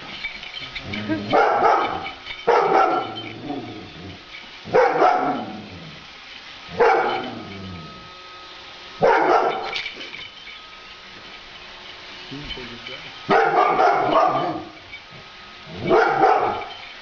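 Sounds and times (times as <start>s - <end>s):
faint steady whine: 0.0s - 17.0s
dog barking: 1.3s - 3.2s, 4.7s - 5.5s, 6.7s - 7.3s, 9.0s - 9.7s, 13.3s - 14.7s, 15.8s - 16.7s.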